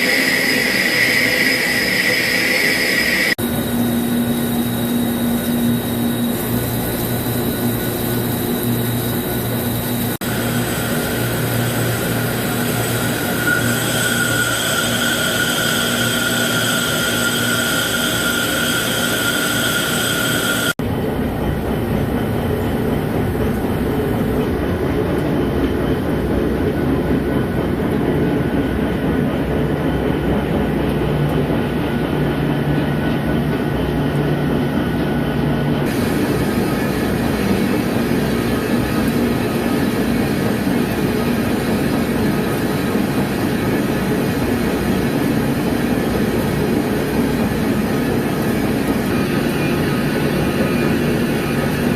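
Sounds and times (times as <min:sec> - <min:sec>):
lathe cutting metal: 0:00.0 - 0:20.8
high machine whine: 0:00.0 - 0:27.4.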